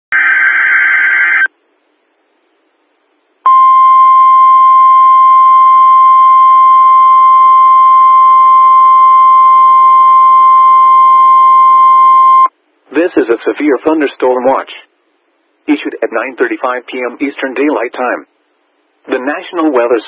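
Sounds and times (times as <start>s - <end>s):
loud steady warning tone: 3.5s - 12.5s.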